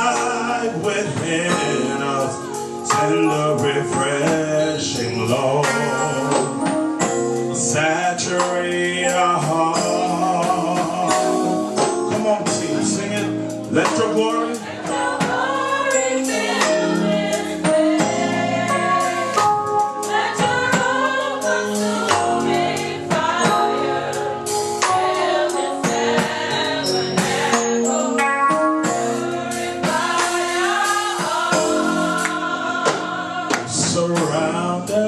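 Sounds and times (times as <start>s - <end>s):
live band with percussion: 0.0s - 35.0s
choir singing: 14.0s - 34.9s.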